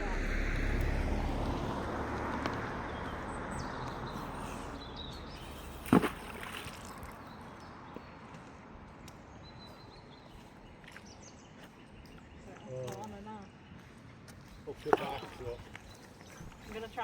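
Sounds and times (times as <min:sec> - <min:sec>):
pond water sloshing: 0:00.0 - 0:07.6, 0:14.7 - 0:16.8
sharp splash: 0:05.5 - 0:07.2.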